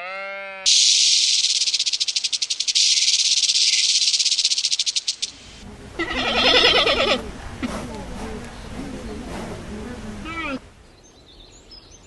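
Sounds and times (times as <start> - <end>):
animal buzzing rattle: 0.7 - 5.4
goat bleating: 6.0 - 7.2.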